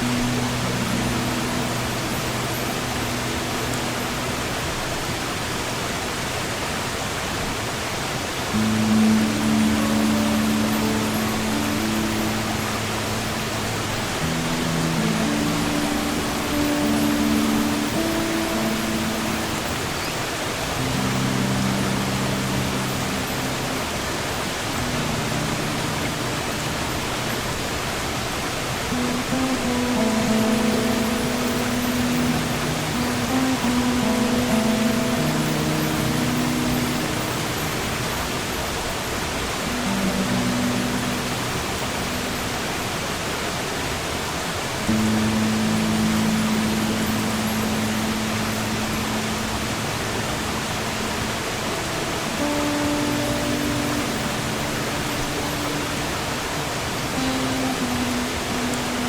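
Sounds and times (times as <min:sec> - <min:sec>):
sea surf: 0:00.0 - 0:59.0
slow acoustic guitar: 0:08.5 - 0:19.8, 0:28.9 - 0:38.6
acoustic guitar notes: 0:08.5 - 0:27.5, 0:28.9 - 0:38.5, 0:44.9 - 0:59.0.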